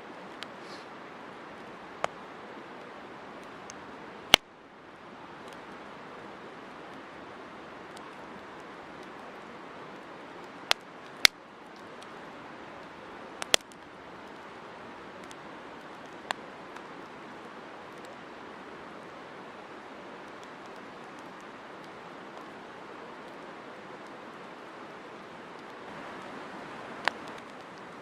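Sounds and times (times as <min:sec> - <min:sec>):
campfire hissing and crackling: 0:00.0 - 0:28.0
wood popping: 0:13.4 - 0:13.9.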